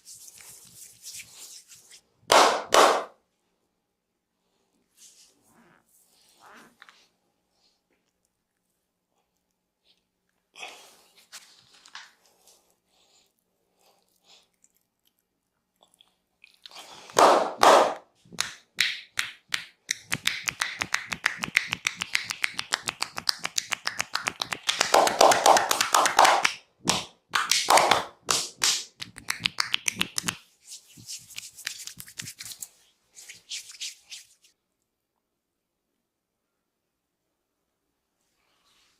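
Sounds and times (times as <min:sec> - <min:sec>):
hands tapping and slapping on body: 0:02.3 - 0:03.1, 0:17.1 - 0:30.4.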